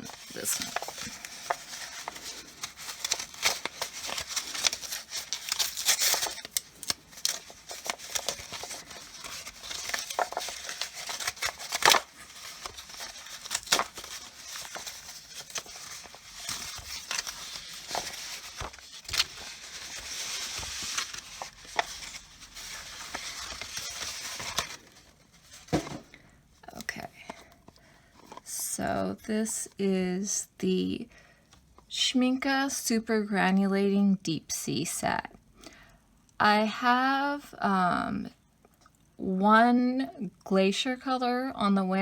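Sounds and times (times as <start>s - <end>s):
packaging crinkling and rustling: 0.0s - 28.5s.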